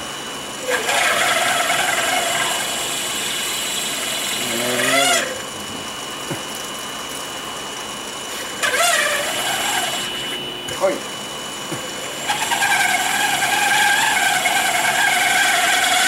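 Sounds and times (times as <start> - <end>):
mill motor high whine: 0.0 - 16.0
drill bit chattering and squealing: 0.5 - 5.6, 8.5 - 11.1, 11.9 - 16.0.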